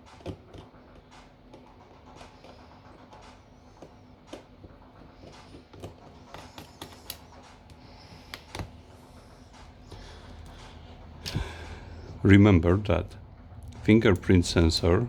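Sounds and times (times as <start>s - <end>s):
small tools clicking and tapping: 0.0s - 8.7s.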